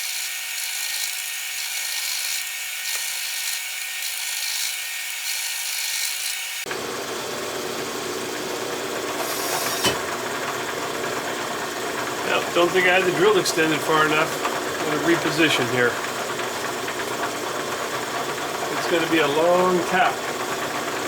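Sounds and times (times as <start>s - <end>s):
milling machine drilling metal: 0.0s - 21.0s.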